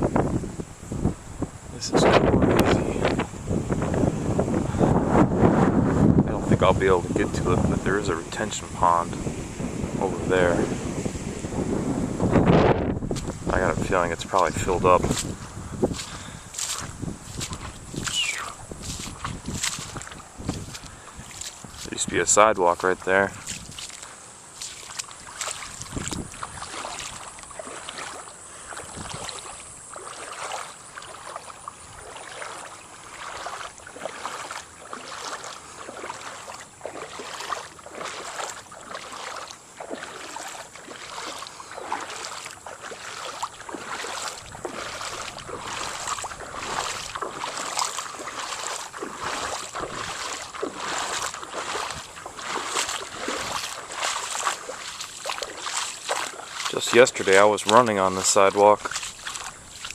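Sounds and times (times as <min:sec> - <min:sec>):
legs wading through water: 0:00.0 - 0:59.9.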